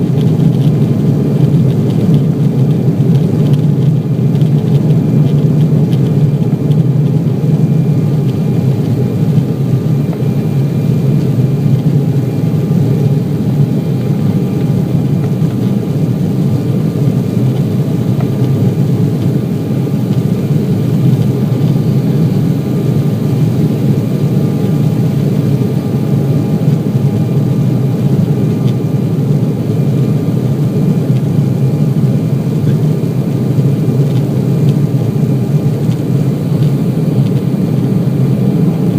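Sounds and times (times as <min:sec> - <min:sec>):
jet engines rumbling: 0:00.0 - 0:38.9.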